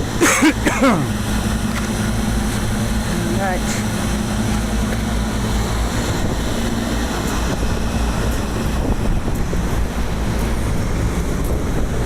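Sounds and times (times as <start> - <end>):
hvac equipment rumbling: 0.0 - 12.0
wind on microphone: 4.5 - 12.0.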